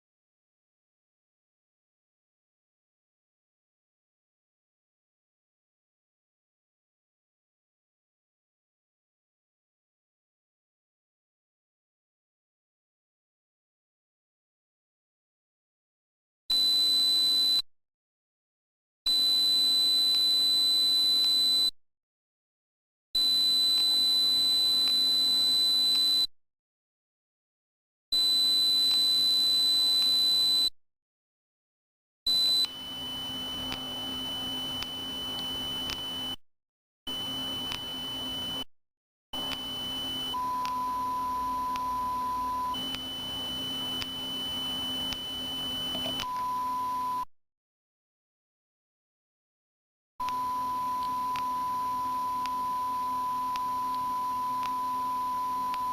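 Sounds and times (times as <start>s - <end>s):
high steady electronic tone: 32.3s - 36.4s, 37.1s - 38.7s, 39.4s - 47.3s
mid-pitched electronic tone: 32.3s - 36.4s, 39.4s - 47.3s.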